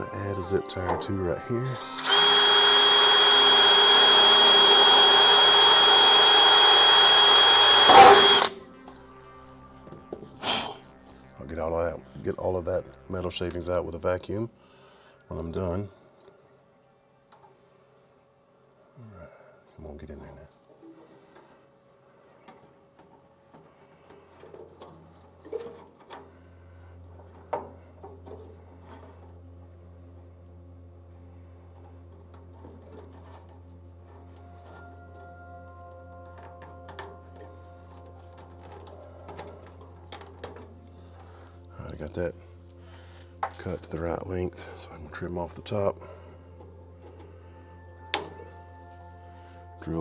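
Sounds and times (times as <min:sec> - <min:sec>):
power drill boring sheet metal: 0:01.7 - 0:08.6
low steady hum: 0:26.2 - 0:50.0.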